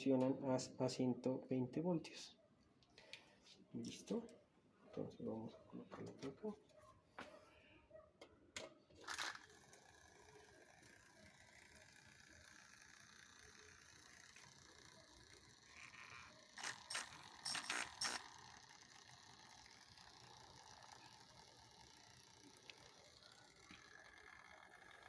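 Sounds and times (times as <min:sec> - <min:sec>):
drain pump whirring and rattling: 0:09.0 - 0:25.0.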